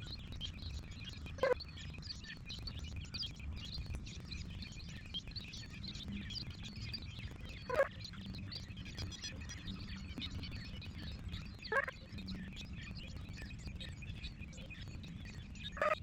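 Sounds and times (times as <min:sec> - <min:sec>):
songbirds chirping and singing: 0:00.1 - 0:16.0.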